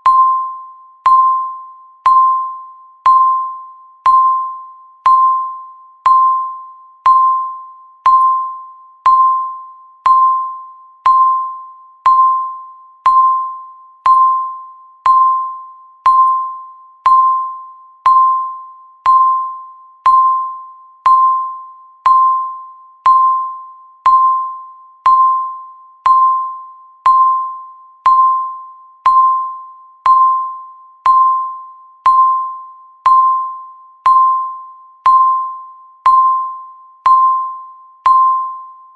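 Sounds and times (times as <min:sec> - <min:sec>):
timer beeping: 0:00.0 - 0:38.9.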